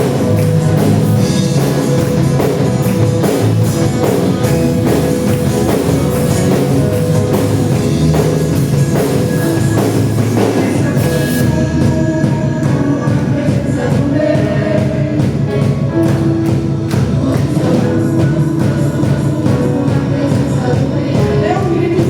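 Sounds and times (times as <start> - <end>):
instrumental band music: 0.0 - 22.0.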